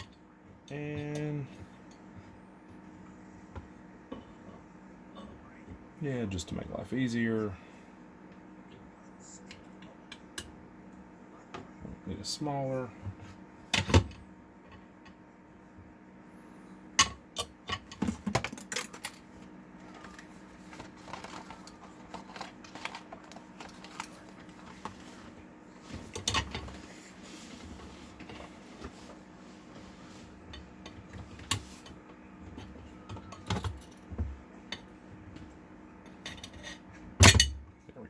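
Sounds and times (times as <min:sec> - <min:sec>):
faint steady hum: 0:00.0 - 0:38.0
clinks of tools and metal parts: 0:36.1 - 0:37.6.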